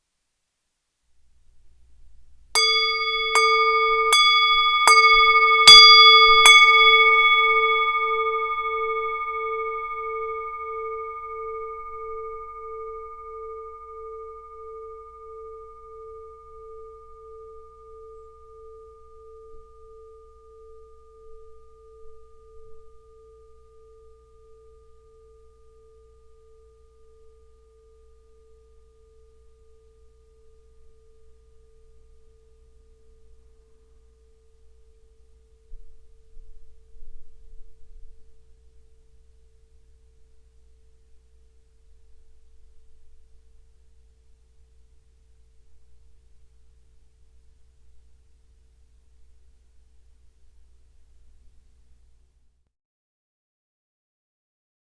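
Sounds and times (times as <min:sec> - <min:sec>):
singing bowl ringing: 0:02.5 - 0:44.4.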